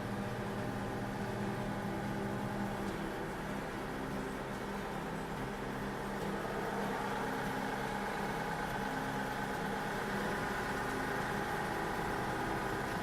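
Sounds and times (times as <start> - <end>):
tractor diesel engine idling: 6.4 - 13.0.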